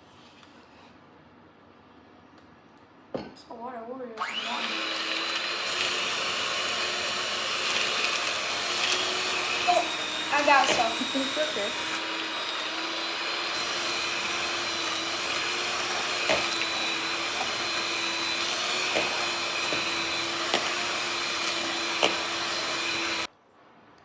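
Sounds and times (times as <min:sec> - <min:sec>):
electric mixer running: 0:04.2 - 0:23.3.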